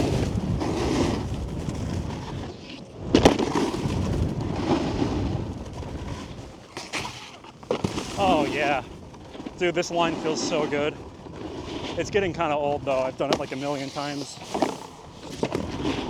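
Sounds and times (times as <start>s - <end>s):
wind rushing over microphone: 0.0s - 6.6s, 8.0s - 16.0s
snowboard carving on snow: 0.0s - 16.0s
snowboard knock: 3.1s - 5.4s, 6.8s - 9.0s, 13.0s - 16.0s.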